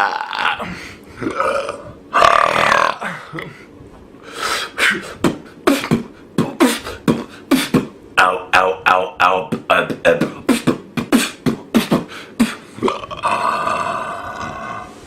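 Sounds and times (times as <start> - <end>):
person burping: 0.0 - 3.5, 9.6 - 15.0.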